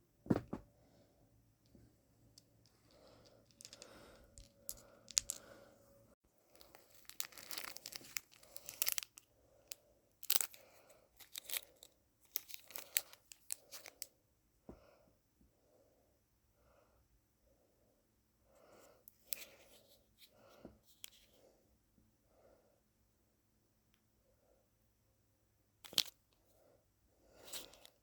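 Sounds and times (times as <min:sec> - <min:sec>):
heavy breathing: 0:02.8 - 0:06.2
packaging tearing and crinkling: 0:06.6 - 0:09.2.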